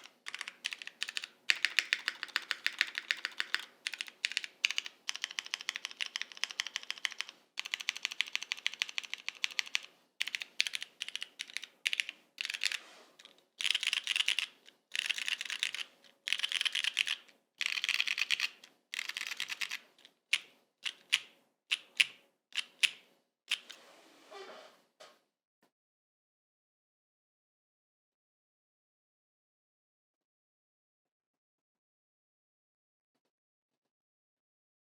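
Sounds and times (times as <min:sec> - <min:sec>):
mechanical keyboard typing: 0:00.0 - 0:23.8.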